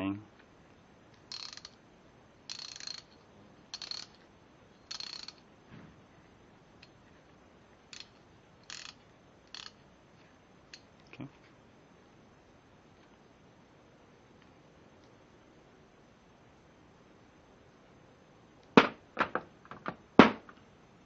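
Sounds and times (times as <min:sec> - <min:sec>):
ratchet wrench clicking: 0:01.3 - 0:01.8, 0:02.5 - 0:04.2, 0:04.9 - 0:05.4, 0:07.9 - 0:09.8.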